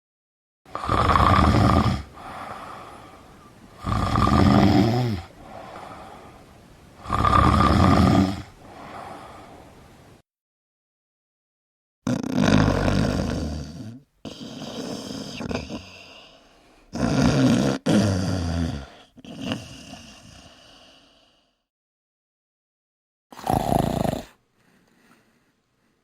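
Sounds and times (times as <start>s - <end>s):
person snoring: 0.7s - 10.0s, 12.1s - 21.5s, 23.4s - 24.4s.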